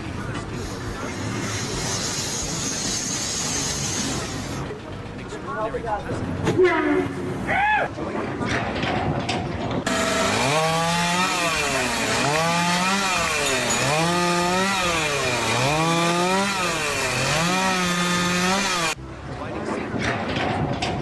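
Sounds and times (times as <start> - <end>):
power saw running: 9.9 - 19.0.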